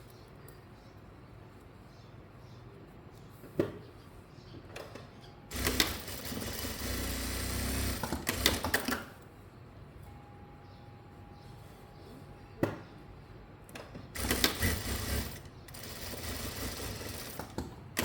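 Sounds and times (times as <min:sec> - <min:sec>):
sewing machine stitching: 0:05.5 - 0:09.0, 0:14.2 - 0:18.0.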